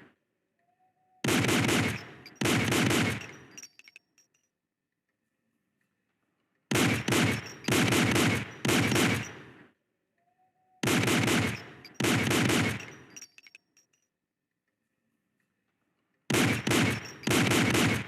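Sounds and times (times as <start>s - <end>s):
pistol shots: 1.2s - 3.7s, 6.7s - 9.6s, 10.8s - 13.3s, 16.3s - 18.0s
high-pitched clinks: 2.0s - 4.5s, 7.3s - 7.8s, 11.5s - 14.1s, 16.8s - 17.4s.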